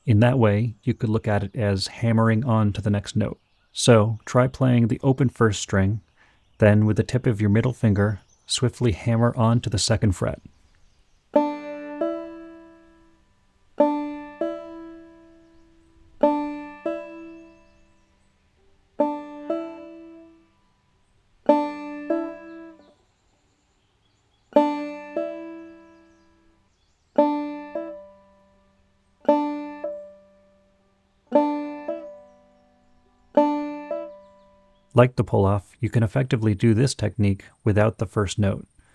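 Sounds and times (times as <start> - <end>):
banjo notes with hammer-ons: 11.4 - 18.2, 18.9 - 20.5, 21.3 - 22.9, 24.5 - 26.5, 27.2 - 36.3.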